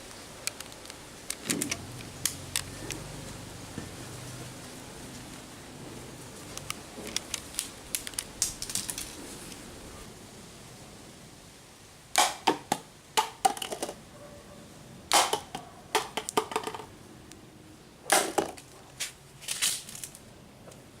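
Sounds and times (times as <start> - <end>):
toy rifle clicks and snaps: 7.1 - 9.1, 15.1 - 16.7.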